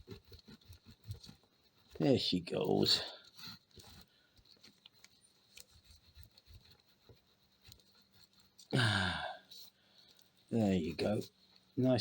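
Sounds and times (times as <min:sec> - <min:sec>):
person speaking: 0:02.0 - 0:03.3, 0:08.7 - 0:09.7, 0:10.5 - 0:12.0.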